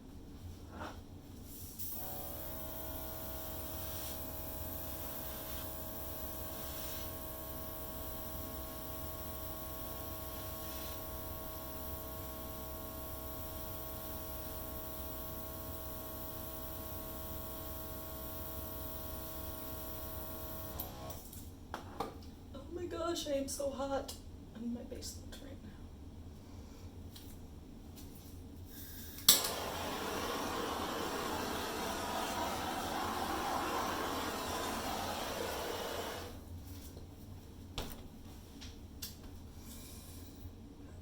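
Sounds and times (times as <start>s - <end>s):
air compressor motor humming: 1.8s - 21.2s, 29.3s - 36.4s.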